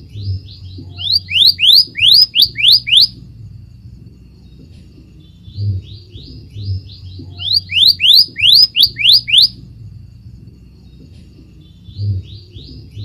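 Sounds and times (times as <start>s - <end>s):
bird singing rising whistles: 0.9s - 3.2s, 7.3s - 9.6s.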